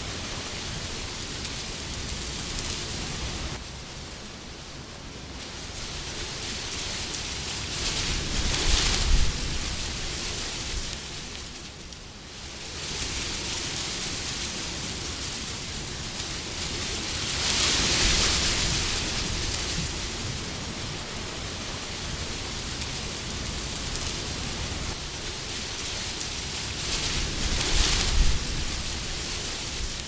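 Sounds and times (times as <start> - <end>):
wind blowing: 14.8 - 30.0.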